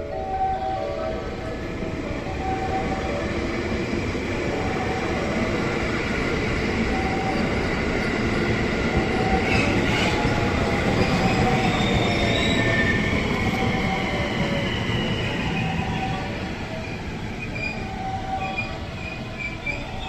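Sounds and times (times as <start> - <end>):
train rumbling: 0.0 - 20.0
wheel and brake squeals: 11.0 - 16.2.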